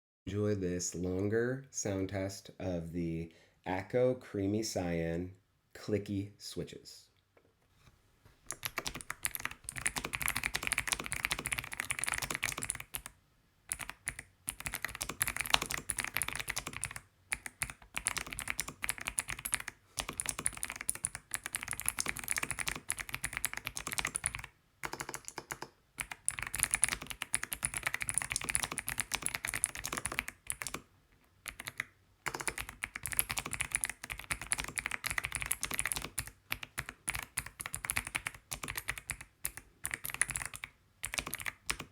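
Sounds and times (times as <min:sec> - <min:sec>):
fast mechanical keyboard typing: 0:08.5 - 0:13.1, 0:13.7 - 0:30.8, 0:31.4 - 0:41.9.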